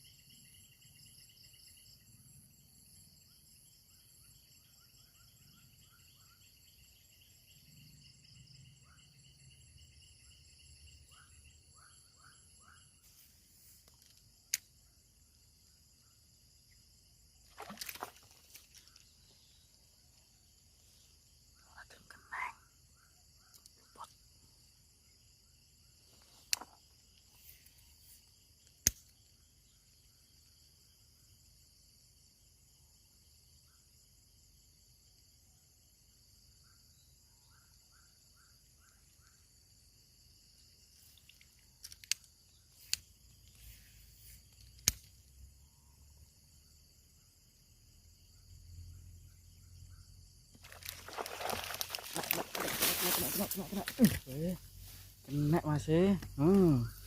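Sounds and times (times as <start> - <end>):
insect chorus drone: 0.0 - 57.0
faint chirps: 17.6 - 31.0, 36.5 - 57.0
sharp clicks: 28.8 - 29.2, 44.7 - 45.1.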